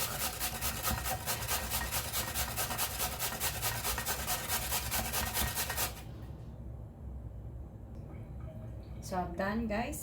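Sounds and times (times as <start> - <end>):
potato rasping on hand grater: 0.0 - 6.0.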